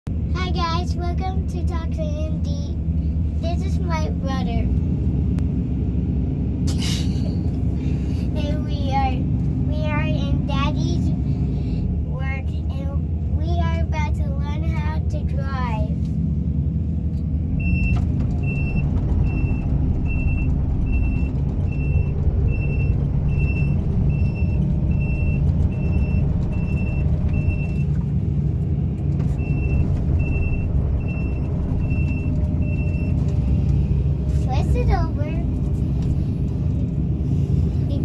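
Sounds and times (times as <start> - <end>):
excavator diesel engine running: 0.1 - 38.0
travel alarm beeping: 17.6 - 27.9, 29.4 - 33.2.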